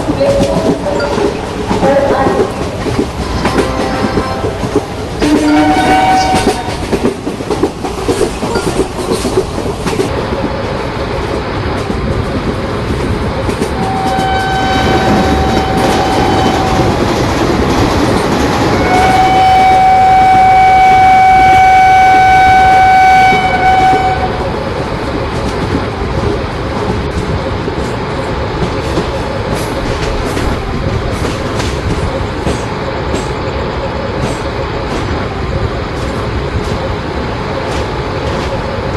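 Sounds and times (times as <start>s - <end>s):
train wheels clattering over rail joints: 0.0s - 10.6s, 11.8s - 19.8s
train horn blasts: 3.4s - 6.8s, 13.8s - 17.0s, 18.7s - 24.4s.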